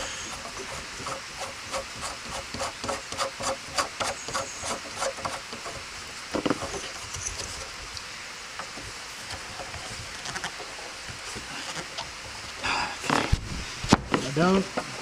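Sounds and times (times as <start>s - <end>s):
light rain hiss: 5.5s - 15.0s.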